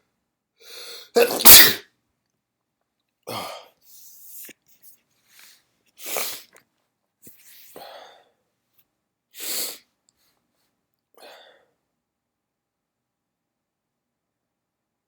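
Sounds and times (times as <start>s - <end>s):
person sneezing: 1.2s - 1.8s, 6.0s - 6.5s.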